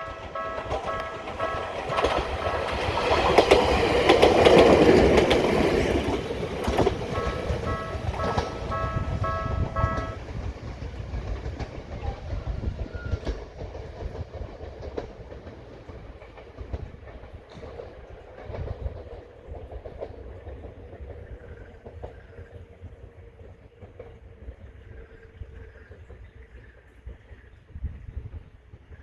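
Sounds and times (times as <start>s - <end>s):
level crossing warning tones: 0.0s - 10.4s
electric train running: 0.0s - 25.5s
train wheels clacking over rail joints: 0.0s - 27.4s.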